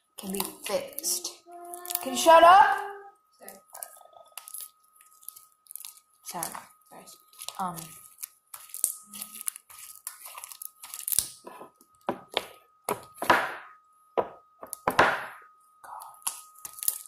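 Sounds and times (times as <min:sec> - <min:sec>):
faint steady high tone: 0:00.0 - 0:04.9.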